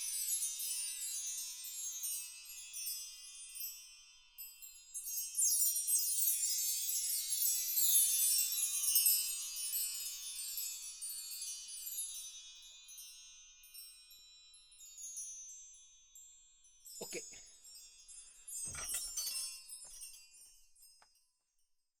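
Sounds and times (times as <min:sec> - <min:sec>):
bar chimes ringing: 0:18.7 - 0:20.1.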